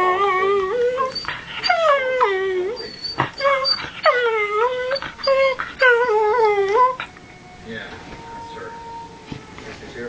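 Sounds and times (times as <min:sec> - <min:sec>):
dog howling and whining: 0:00.0 - 0:07.3.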